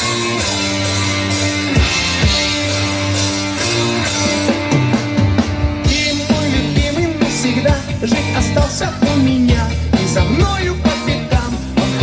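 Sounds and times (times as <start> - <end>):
live rock band playing: 0.0 - 12.0
person singing: 5.8 - 12.0.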